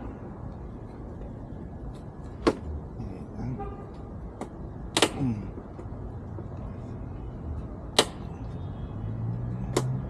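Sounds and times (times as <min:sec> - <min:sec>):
sharp plastic click: 0:04.4 - 0:05.2, 0:07.9 - 0:08.3.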